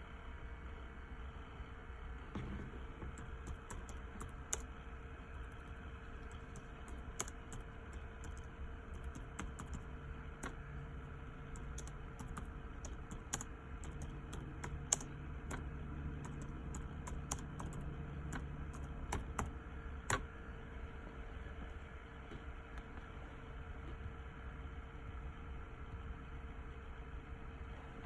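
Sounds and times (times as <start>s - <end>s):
faint hum: 0.0s - 28.0s
typing on keyboard: 3.0s - 4.7s, 5.4s - 10.6s, 11.5s - 20.2s.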